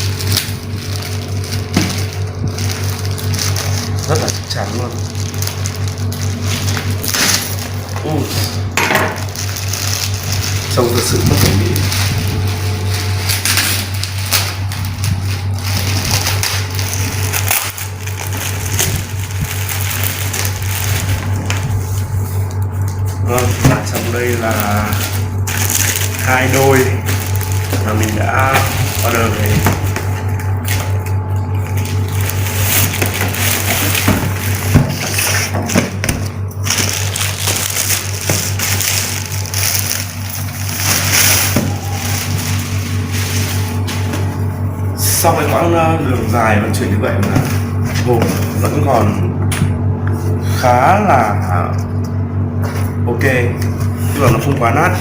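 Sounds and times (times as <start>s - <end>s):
cardboard crackling: 0.0s - 8.6s, 9.2s - 44.6s
steady low hum: 0.0s - 55.0s
cardboard box tearing and crushing: 36.6s - 43.9s.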